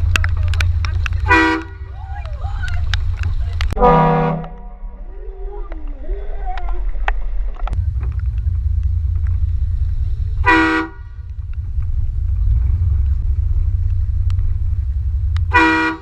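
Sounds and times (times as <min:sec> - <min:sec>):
steady low rumble: 0:00.0 - 0:16.0
train horn blasting: 0:03.8 - 0:04.8, 0:10.4 - 0:11.2, 0:15.5 - 0:16.0.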